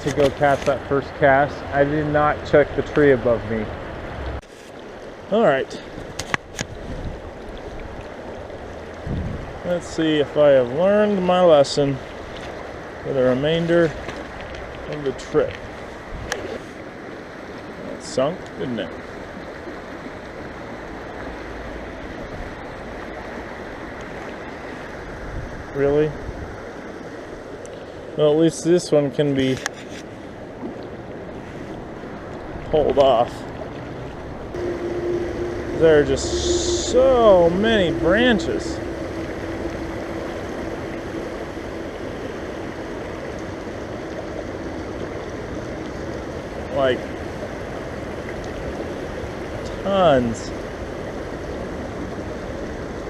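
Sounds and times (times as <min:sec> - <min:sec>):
river water rushing: 0:33.5 - 0:49.5.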